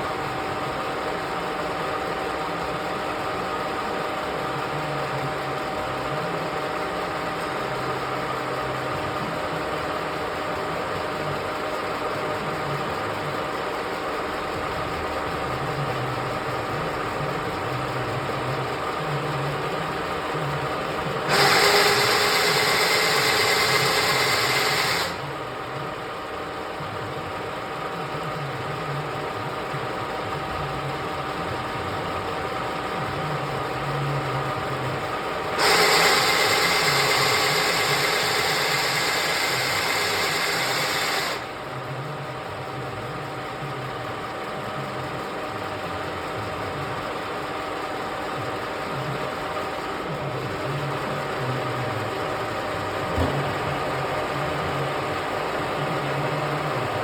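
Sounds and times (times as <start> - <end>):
milling machine humming: 0.0 - 57.0.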